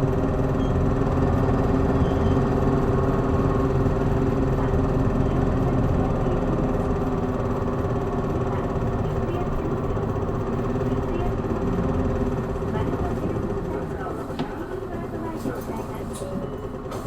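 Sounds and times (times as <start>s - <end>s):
bus engine drone: 0.0s - 17.0s.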